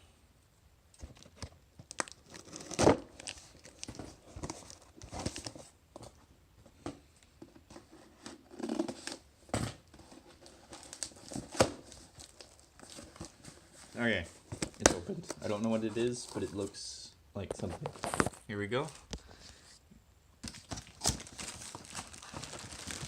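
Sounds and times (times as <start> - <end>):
packaging ripping and crinkling: 1.9 - 5.5, 20.4 - 23.0.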